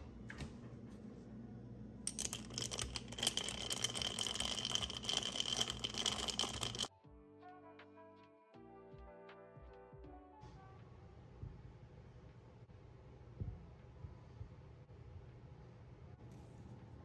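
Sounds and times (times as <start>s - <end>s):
rapid crackling and clicking: 2.2s - 6.9s
soft background music: 6.9s - 12.0s.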